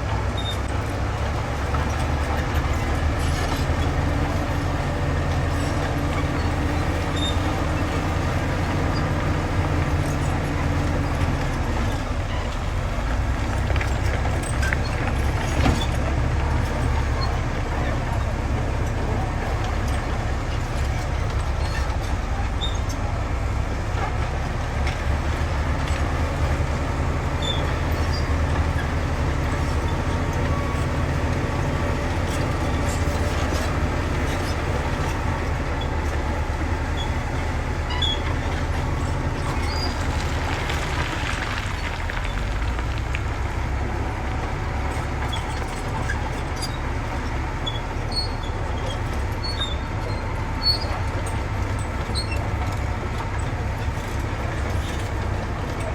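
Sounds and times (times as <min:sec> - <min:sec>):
diesel engines droning: 0:00.0 - 0:55.9
high-pitched metal squeaks: 0:36.8 - 0:40.3.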